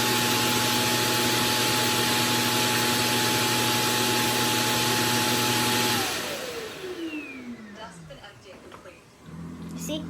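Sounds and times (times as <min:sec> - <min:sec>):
suction motor rushing and whining: 0:00.0 - 0:07.7.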